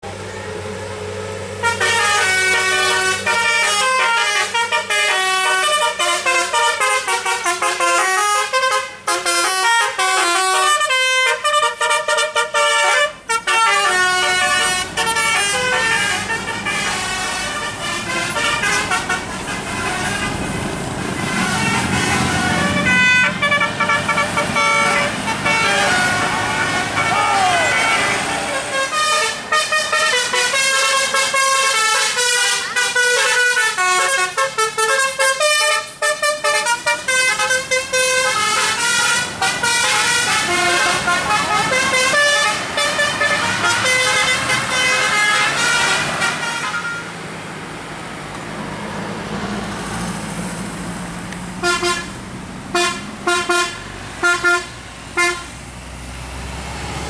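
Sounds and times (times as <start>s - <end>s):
bus engine running: 0.0s - 57.0s
multi-tone bus horn playing notes: 0.2s - 47.2s, 51.6s - 55.6s.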